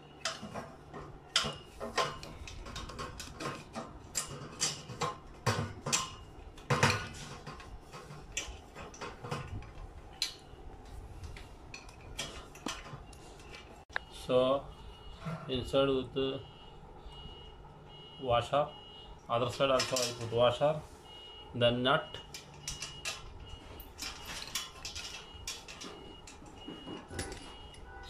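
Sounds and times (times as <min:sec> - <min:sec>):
metal washers and bolt clinking: 0:00.0 - 0:13.8, 0:19.2 - 0:20.6, 0:22.0 - 0:28.0.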